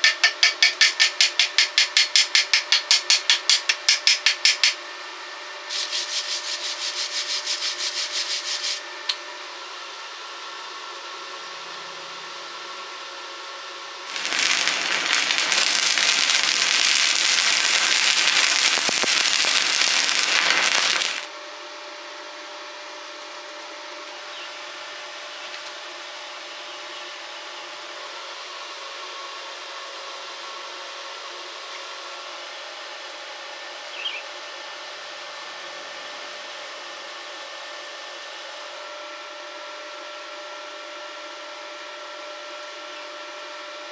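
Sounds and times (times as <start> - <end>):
rapid scraping strokes: 0.0 - 4.8, 5.7 - 8.9
welding arc crackling hiss: 0.0 - 4.8, 5.7 - 8.9, 14.1 - 21.3.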